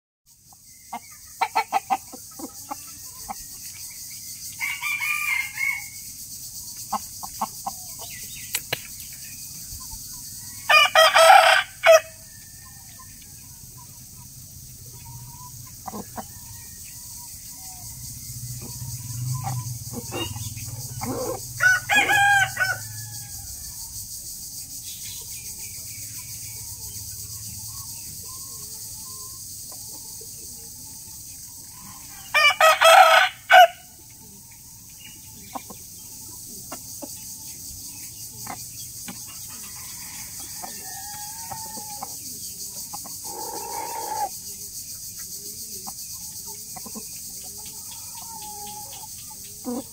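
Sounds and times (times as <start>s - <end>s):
roosters crowing: 4.3s - 6.2s, 10.2s - 13.7s, 14.3s - 24.0s, 31.4s - 34.2s, 39.1s - 44.4s, 47.0s - 49.9s.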